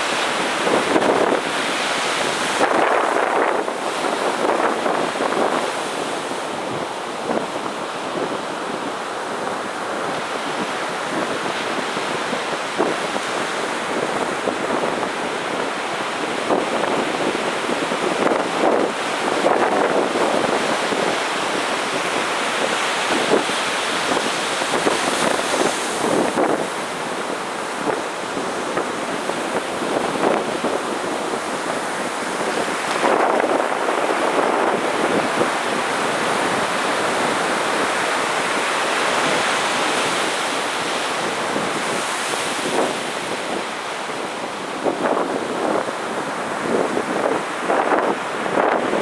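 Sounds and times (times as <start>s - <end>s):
surf breaking on sandy beach: 0.0s - 49.0s
wind buffeting microphone: 0.0s - 49.0s.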